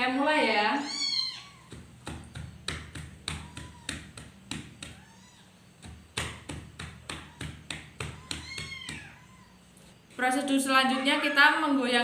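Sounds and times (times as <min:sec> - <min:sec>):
hand patting a back: 0:01.6 - 0:09.2.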